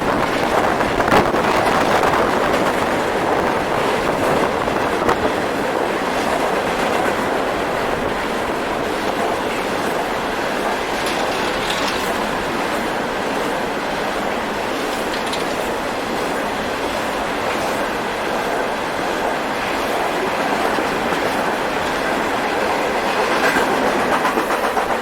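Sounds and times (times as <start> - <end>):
wind noise on microphone: 0.0 - 14.0
freight train rumbling past: 0.0 - 25.0.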